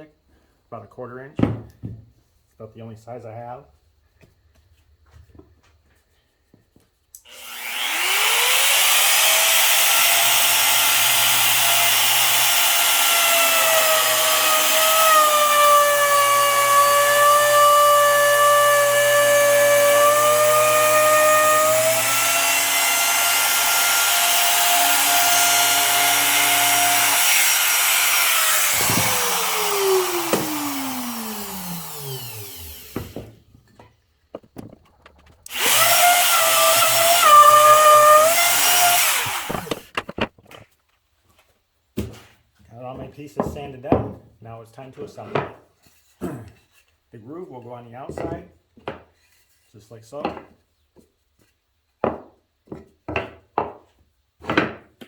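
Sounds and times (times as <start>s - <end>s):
wood router high whine: 7.3s - 33.3s, 35.5s - 39.8s
router cutting groove in wood: 7.3s - 33.4s, 35.4s - 39.9s.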